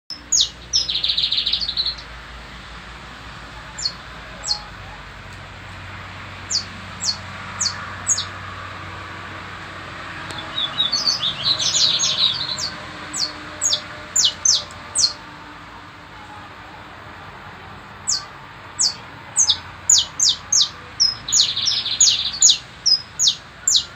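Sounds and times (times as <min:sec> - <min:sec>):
finch singing with trills: 0:00.1 - 0:02.2, 0:03.6 - 0:04.9, 0:06.5 - 0:08.4, 0:10.2 - 0:15.3, 0:18.0 - 0:23.9.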